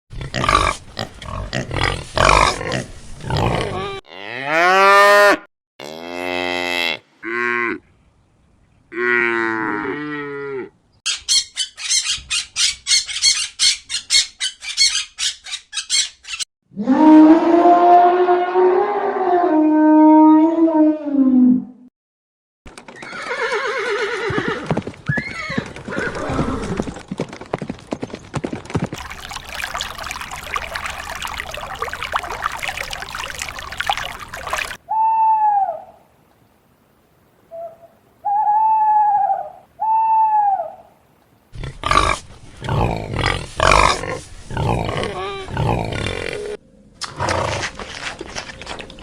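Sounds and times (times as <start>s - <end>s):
horse whinnying: 23.0s - 26.9s.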